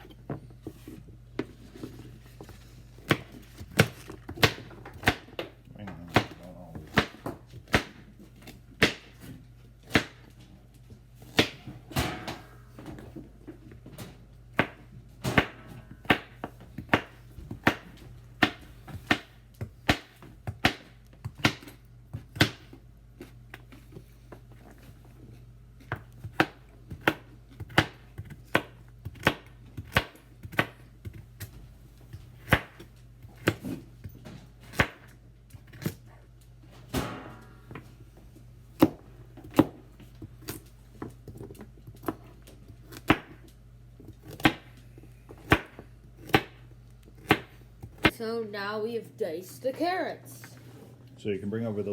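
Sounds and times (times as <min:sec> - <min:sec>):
knife chopping on cutting board: 0:06.1 - 0:10.3, 0:14.5 - 0:24.0, 0:25.8 - 0:31.2, 0:32.4 - 0:33.8, 0:38.8 - 0:39.8, 0:44.1 - 0:48.1.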